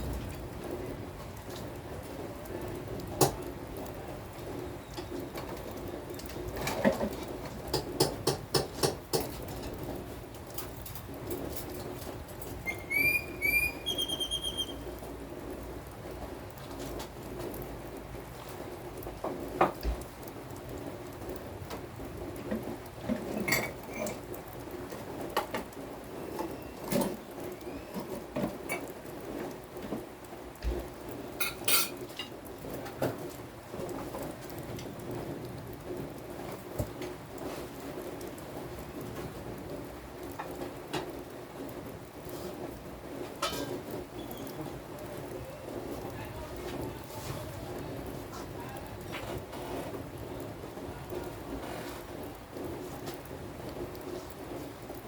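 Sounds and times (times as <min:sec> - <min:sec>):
steady rain: 0:00.0 - 0:55.0
drops tapping hard surfaces: 0:07.7 - 0:09.4
low bird calls: 0:12.6 - 0:15.0.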